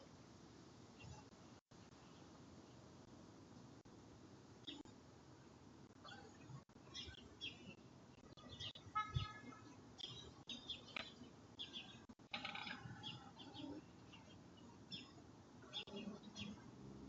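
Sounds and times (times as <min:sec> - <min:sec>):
faint bird chirps: 0:04.6 - 0:04.9, 0:06.0 - 0:16.7.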